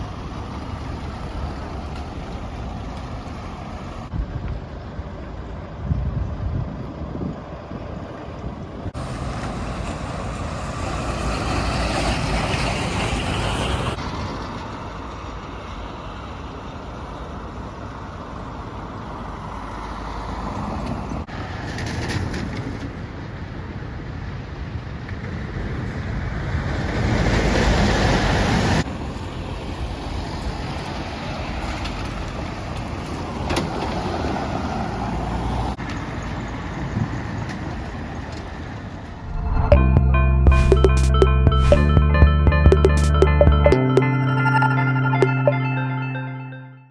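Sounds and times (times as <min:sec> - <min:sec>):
heavy engines rumbling: 0:00.0 - 0:19.6.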